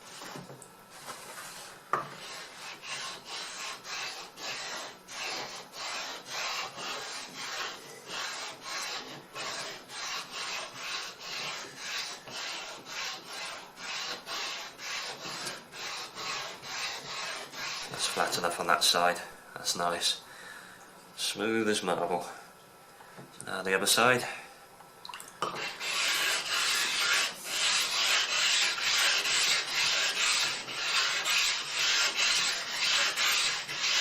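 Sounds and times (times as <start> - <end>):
gritty stone-on-stone rasp: 1.5 - 18.4, 25.5 - 34.0.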